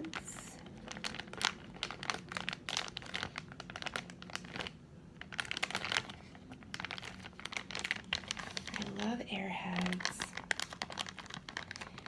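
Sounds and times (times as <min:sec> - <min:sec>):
candy package crinkling: 0:00.0 - 0:12.0.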